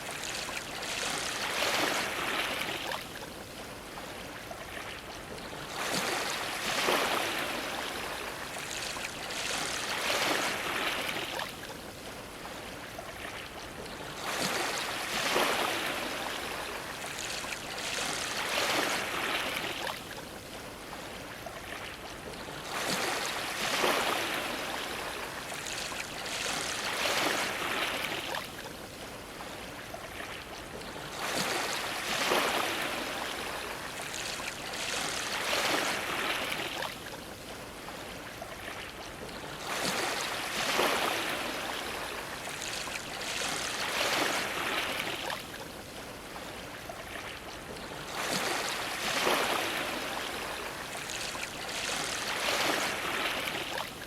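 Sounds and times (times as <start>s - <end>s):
ocean waves splashing against dock: 0.0s - 54.0s.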